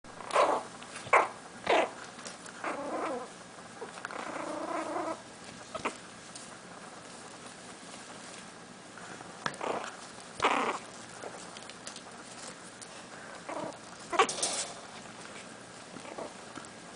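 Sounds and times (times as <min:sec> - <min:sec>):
puppies whining: 0:02.6 - 0:06.1, 0:09.5 - 0:12.5, 0:13.2 - 0:14.8, 0:15.8 - 0:16.5.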